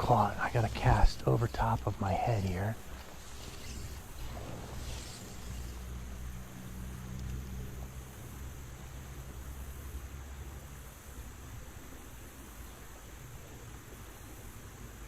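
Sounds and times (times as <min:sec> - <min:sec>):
creek water flowing: 0:00.0 - 0:10.2.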